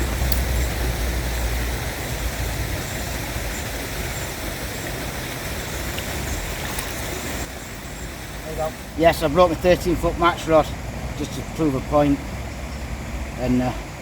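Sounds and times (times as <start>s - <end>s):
wind rumble on microphone: 0.0s - 7.5s
river water rushing: 0.0s - 14.0s.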